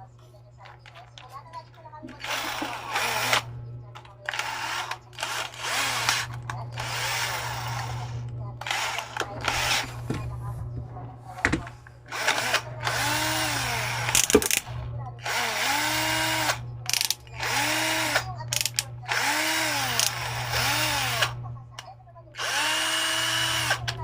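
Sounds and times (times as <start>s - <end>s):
cordless drill motor whine: 2.2s - 3.5s, 4.3s - 10.1s, 12.1s - 21.4s, 22.4s - 24.0s.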